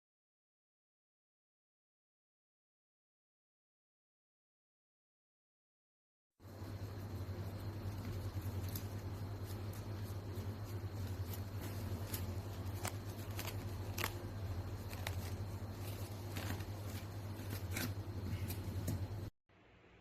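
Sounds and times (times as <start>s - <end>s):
steady low hum: 6.4s - 20.0s.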